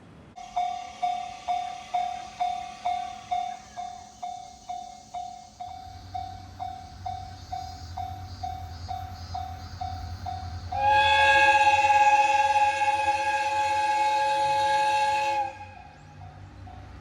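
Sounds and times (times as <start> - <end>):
train rumbling: 0.0 - 17.0
level-crossing warning bell: 0.4 - 11.0
train horn: 10.6 - 16.0.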